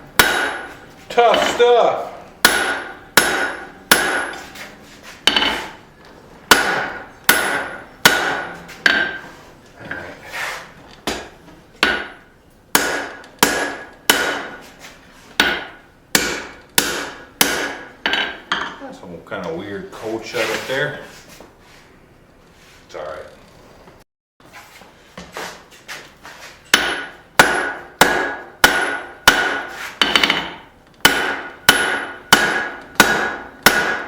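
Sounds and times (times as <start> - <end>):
hammer striking steel on anvil: 0.2 - 1.8, 2.4 - 4.6, 5.2 - 5.8, 6.5 - 9.3, 11.1 - 14.6, 15.4 - 18.8, 26.7 - 34.0.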